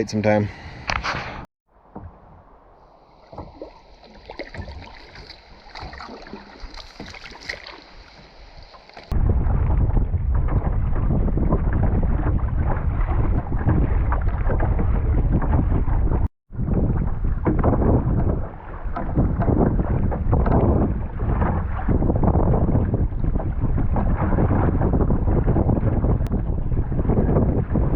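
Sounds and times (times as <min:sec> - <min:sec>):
water: 0:00.0 - 0:27.9
paddle splashing in water: 0:01.0 - 0:27.9
wind buffeting microphone: 0:09.0 - 0:27.9.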